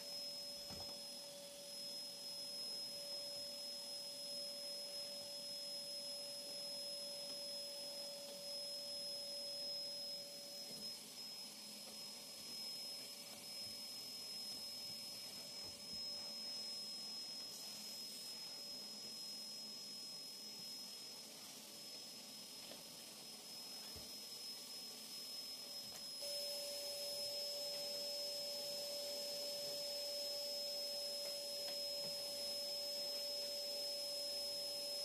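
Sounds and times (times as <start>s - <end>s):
high-pitched whine: 0.0s - 35.0s.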